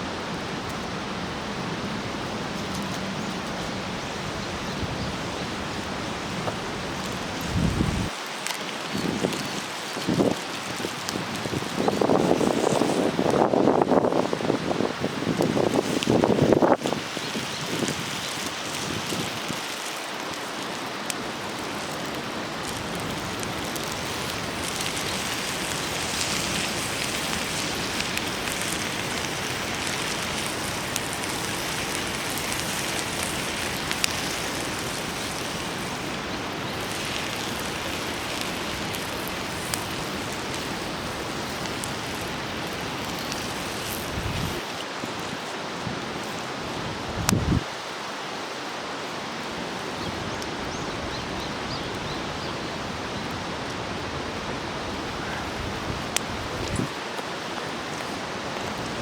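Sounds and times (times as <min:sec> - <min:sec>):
noodles sizzling on iron plate: 0:15.1 - 0:44.8.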